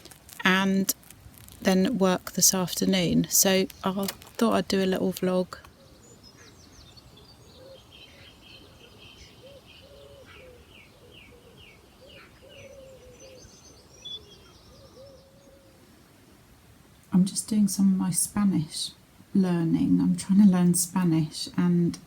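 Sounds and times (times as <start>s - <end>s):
small birds chirping: 0.0s - 16.0s
pigeon cooing: 9.4s - 13.5s.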